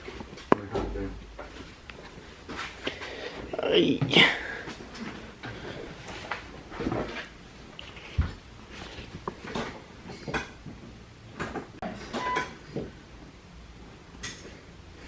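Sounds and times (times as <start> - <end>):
knocks and clatters of handling: 4.0 - 13.0.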